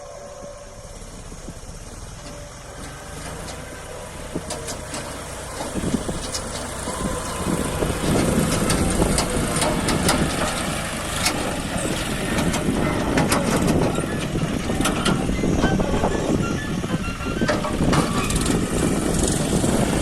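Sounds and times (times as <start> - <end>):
tractor diesel engine running: 0.0 - 20.0
sharp clicks and rattles: 1.3 - 16.1.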